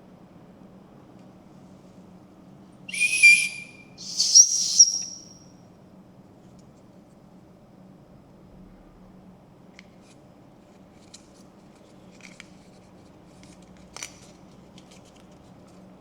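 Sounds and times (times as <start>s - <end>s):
short high whistle tones: 2.9s - 5.4s.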